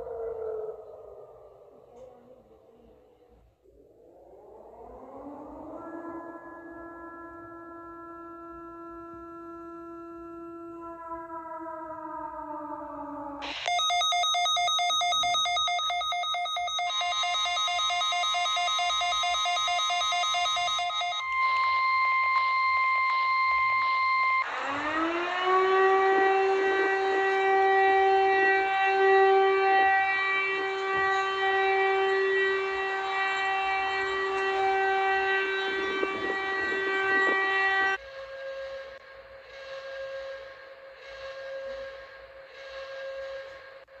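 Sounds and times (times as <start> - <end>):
siren wailing: 0.0 - 44.0
pulsing electronic alert tone: 13.6 - 24.4.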